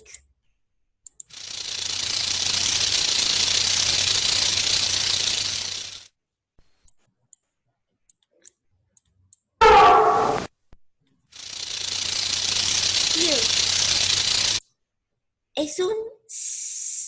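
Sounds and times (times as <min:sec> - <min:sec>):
snake hissing: 0:01.3 - 0:06.0, 0:11.4 - 0:14.6.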